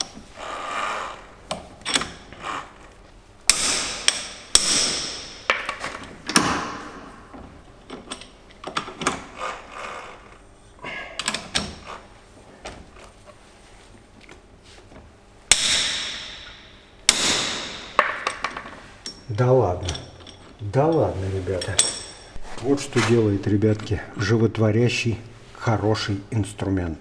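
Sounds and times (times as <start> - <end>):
tool handling clicks and knocks: 1.5 - 9.7, 14.2 - 24.1
hammer striking steel tools: 3.5 - 5.8, 15.5 - 22.4.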